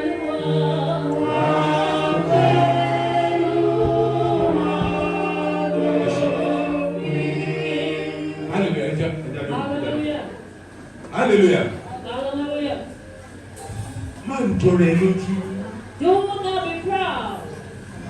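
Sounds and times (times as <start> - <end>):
congregation singing: 0.0 - 10.8.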